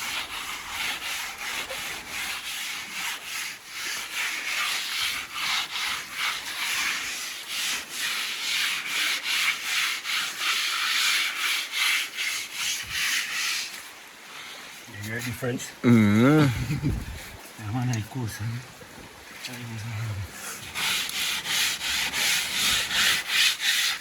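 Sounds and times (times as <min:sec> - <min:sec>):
abrasive rasping on boat hull: 0:00.0 - 0:15.2, 0:20.3 - 0:24.0.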